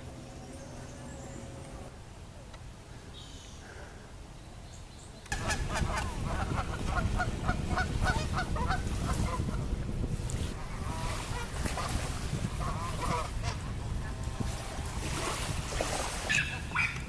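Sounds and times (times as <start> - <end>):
geese honking: 5.3 - 9.5
wind rumble on microphone: 5.3 - 17.0.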